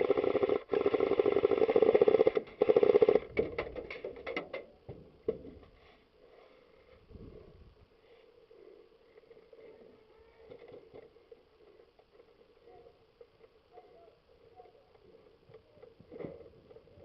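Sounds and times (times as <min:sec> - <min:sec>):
airsoft rifles firing bursts: 0:00.0 - 0:03.4.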